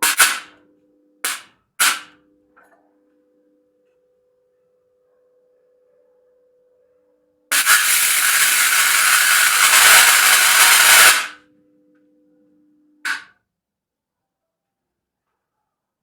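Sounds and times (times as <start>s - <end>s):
faint steady hum: 0.6s - 1.2s, 11.4s - 13.0s
arc welder crackling: 7.5s - 11.4s.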